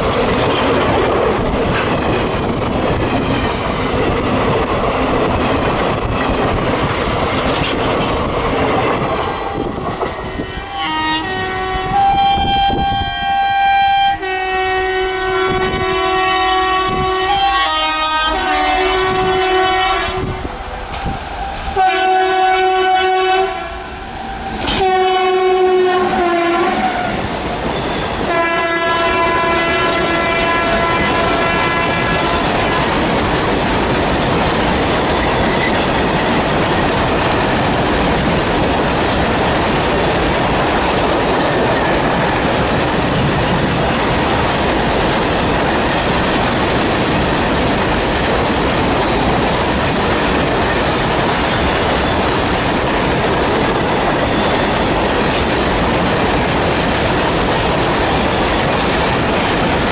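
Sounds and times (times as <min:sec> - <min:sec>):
train wheels clattering on rails: 0:00.0 - 0:10.5, 0:24.4 - 0:59.9
locomotive horn blasts: 0:09.4 - 0:20.6, 0:21.4 - 0:27.2, 0:27.8 - 0:32.8.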